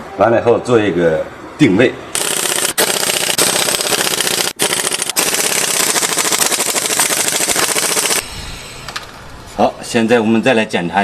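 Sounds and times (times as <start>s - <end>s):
pneumatic impact wrench hammering: 2.1s - 9.2s.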